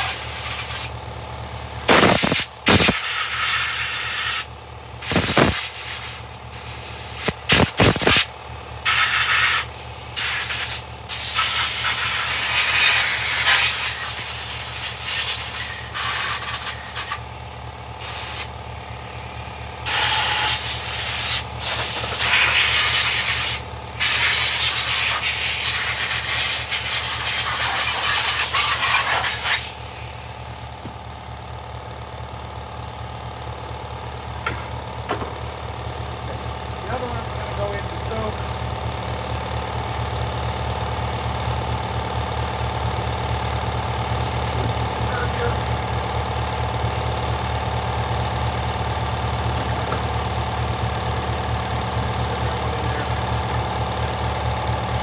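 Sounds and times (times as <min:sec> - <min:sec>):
air blow gun hissing: 0:00.0 - 0:01.0, 0:01.8 - 0:17.3, 0:18.0 - 0:18.6, 0:19.8 - 0:30.9.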